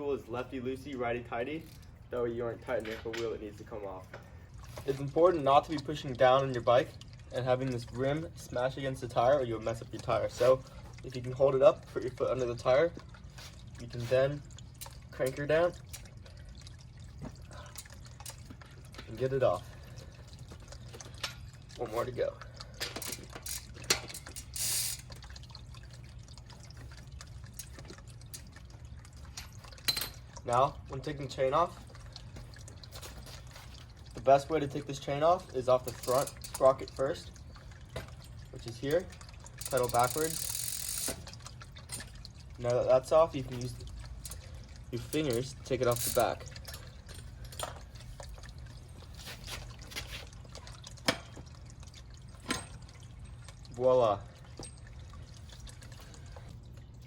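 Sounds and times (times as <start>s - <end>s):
bicycle chain links rattling: 22.9s - 25.2s, 35.8s - 36.8s, 39.6s - 41.3s, 45.0s - 47.8s
wrench clicking on metal: 39.6s - 41.2s.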